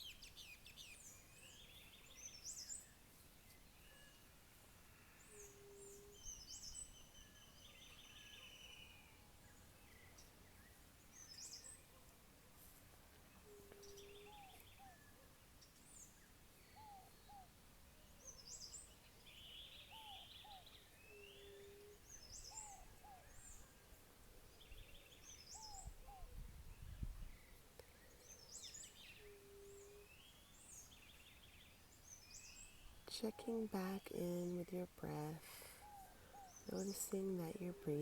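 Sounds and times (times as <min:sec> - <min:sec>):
birds chirping: 0:13.1 - 0:38.0.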